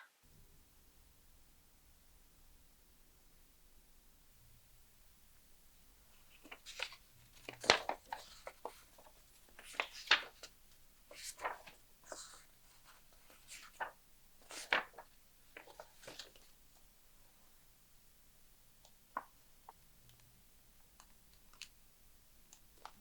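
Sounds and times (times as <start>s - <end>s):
packaging rustling: 6.3s - 10.5s.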